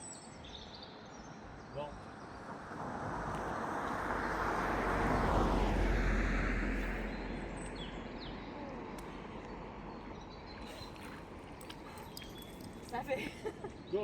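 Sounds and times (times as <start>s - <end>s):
vehicle passing: 2.6s - 8.6s.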